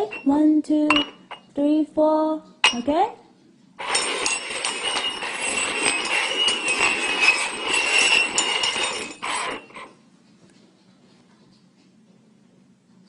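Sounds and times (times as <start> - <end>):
cups scraping across tabletop: 3.8 - 10.0.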